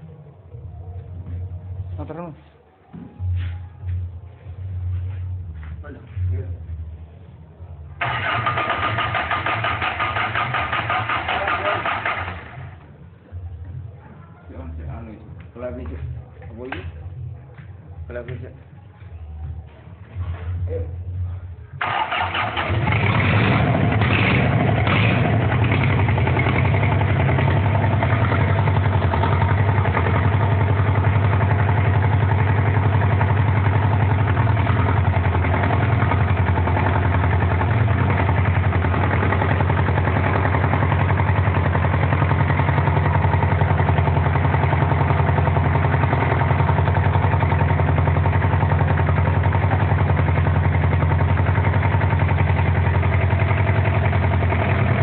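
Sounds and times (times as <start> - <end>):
diesel engine starting and idling: 7.9 - 12.9, 21.7 - 55.0.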